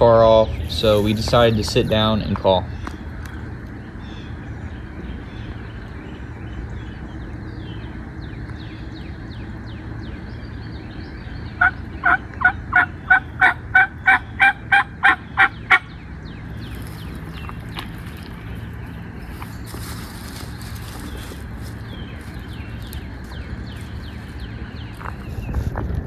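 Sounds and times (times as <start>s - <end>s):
turkey yelps: 11.6s - 15.9s.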